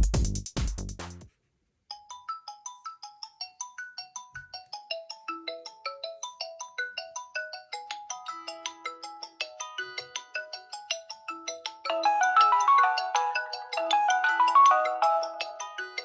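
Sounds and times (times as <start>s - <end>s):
mobile phone ringtone melody: 11.8s - 16.0s.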